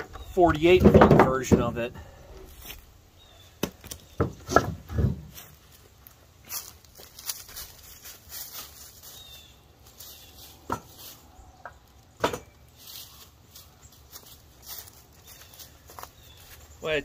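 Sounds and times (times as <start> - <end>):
firewood knocking together: 0.0 - 1.8, 3.6 - 5.4.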